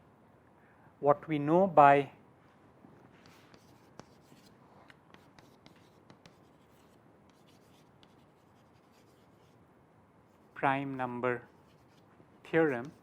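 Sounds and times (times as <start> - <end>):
pen scratching on paper: 3.2 - 4.5, 5.1 - 9.6, 11.5 - 13.0.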